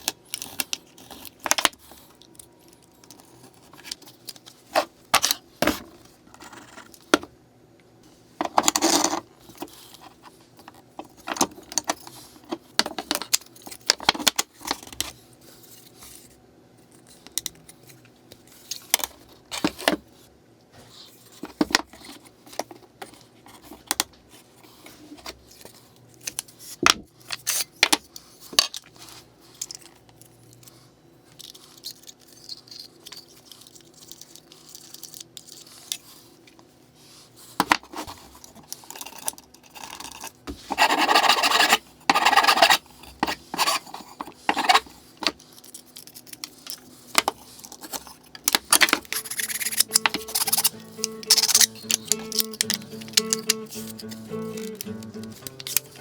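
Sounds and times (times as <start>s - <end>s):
small clicks and knocks of tools: 51.3s - 53.6s.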